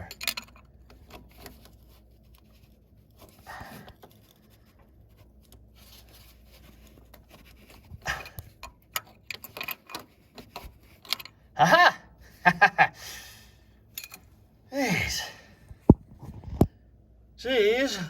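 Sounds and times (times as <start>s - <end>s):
hand tools clicking and knocking: 0.0s - 1.7s, 7.1s - 11.4s
person breathing out hard: 14.7s - 15.7s.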